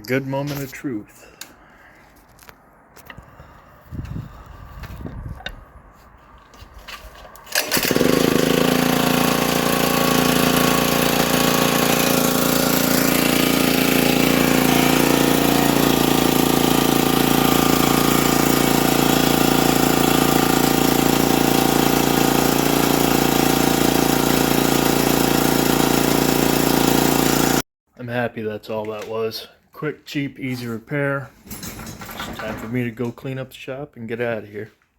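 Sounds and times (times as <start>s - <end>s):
generator engine starting and running: 1.1s - 27.6s.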